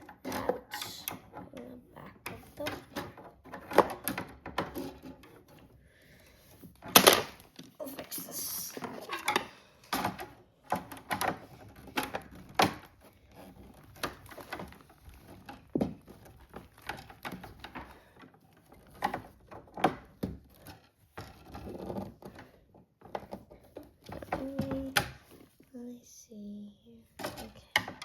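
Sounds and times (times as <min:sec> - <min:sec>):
toy pieces clicking and knocking: 0:00.0 - 0:05.6.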